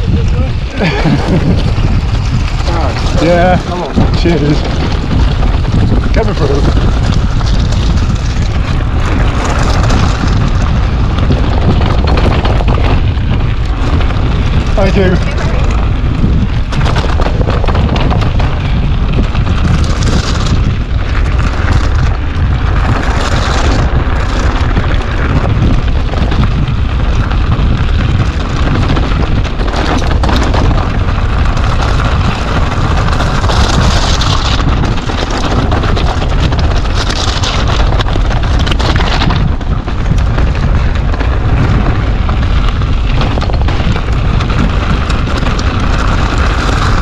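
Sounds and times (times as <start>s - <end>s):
wind buffeting microphone: 0.0s - 47.0s.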